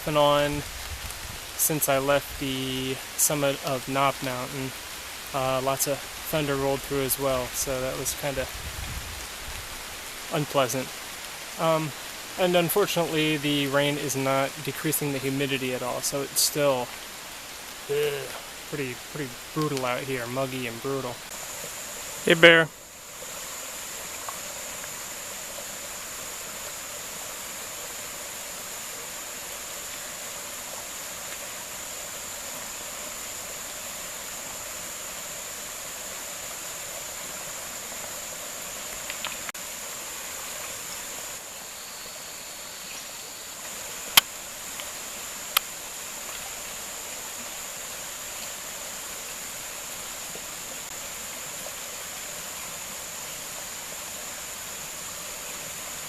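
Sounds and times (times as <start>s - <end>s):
creek rushing: 0.0s - 56.0s
high-pitched insect drone: 17.9s - 56.0s.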